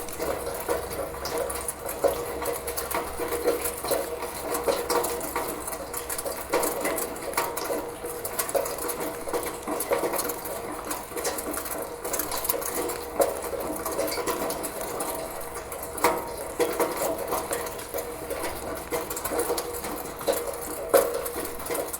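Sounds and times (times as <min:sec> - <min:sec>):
water trickling through gutter: 0:00.0 - 0:21.9.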